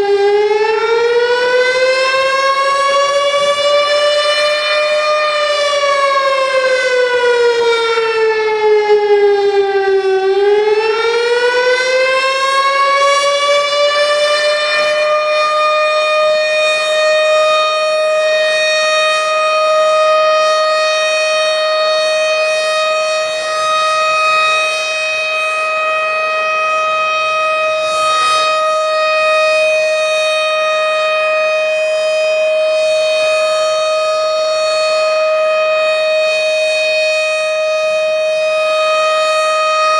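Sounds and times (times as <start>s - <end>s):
tornado warning siren wailing: 0.0s - 39.9s.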